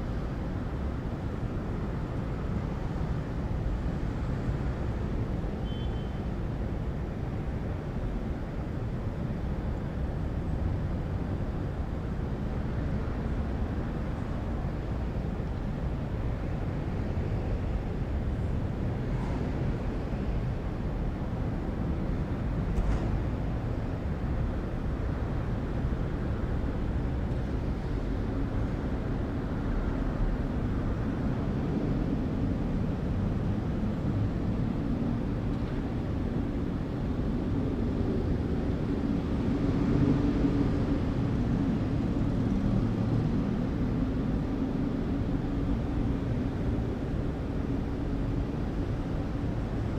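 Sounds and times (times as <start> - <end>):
traffic rumble: 0.0 - 49.9.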